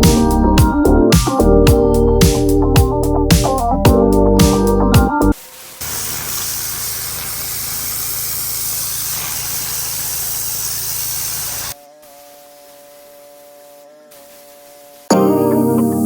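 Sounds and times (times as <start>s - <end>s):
quiet synth music: 0.0s - 5.4s, 15.1s - 16.0s
pressure washer water jet hissing: 5.3s - 15.1s.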